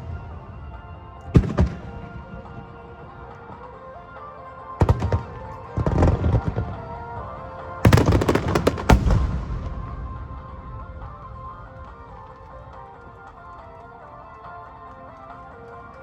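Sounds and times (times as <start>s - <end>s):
fireworks bangs and crackles: 0.0s - 3.6s, 4.8s - 12.4s
music with long held notes: 0.0s - 16.0s.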